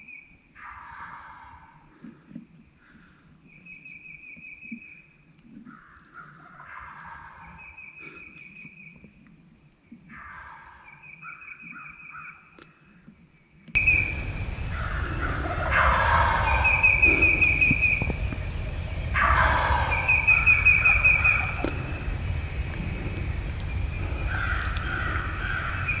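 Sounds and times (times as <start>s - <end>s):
faint turkey calls: 13.8s - 26.0s
turkey gobbling: 13.8s - 26.0s
wind rumble on microphone: 13.8s - 26.0s.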